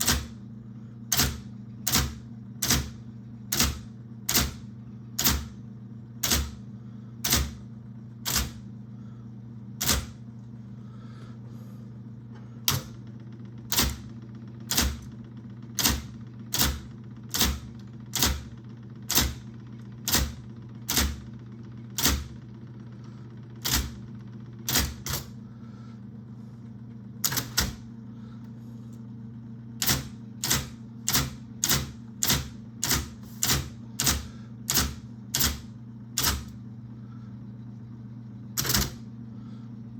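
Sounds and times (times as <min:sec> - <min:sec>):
typewriter typeball clacks: 0:00.0 - 0:00.4, 0:01.1 - 0:04.6, 0:05.2 - 0:05.6, 0:06.2 - 0:06.6, 0:07.2 - 0:07.6, 0:08.2 - 0:08.6, 0:09.8 - 0:10.2, 0:13.7 - 0:15.1, 0:15.8 - 0:21.3, 0:23.6 - 0:24.0, 0:27.2 - 0:27.8, 0:29.8 - 0:36.5, 0:38.6 - 0:39.0
typewriter motor hum: 0:00.0 - 0:25.9, 0:26.8 - 0:37.3, 0:38.3 - 0:39.6.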